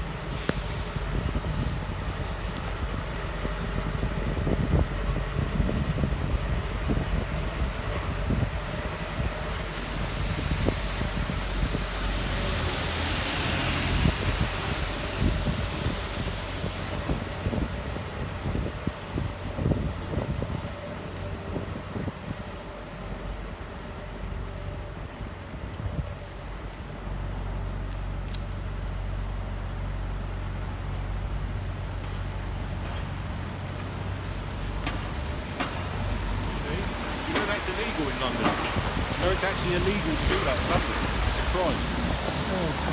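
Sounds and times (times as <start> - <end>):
vehicle passing on wet road: 0.0 - 19.8, 30.4 - 42.9
low traffic rumble: 0.0 - 42.9
vehicle engine droning: 26.8 - 42.9
faint clicks: 27.9 - 28.5.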